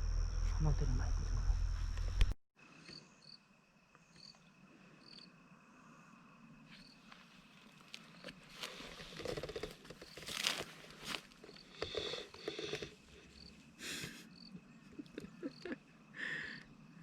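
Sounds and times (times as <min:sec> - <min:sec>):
crickets chirping: 0:00.0 - 0:17.0.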